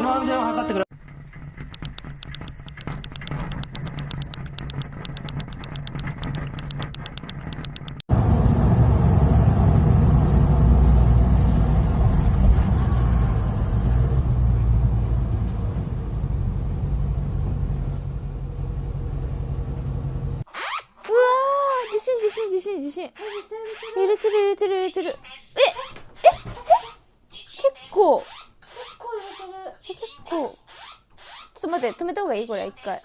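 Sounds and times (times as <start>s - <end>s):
objects rattling with rapid clicks: 0.9s - 8.0s
loud low rumble: 8.1s - 17.8s.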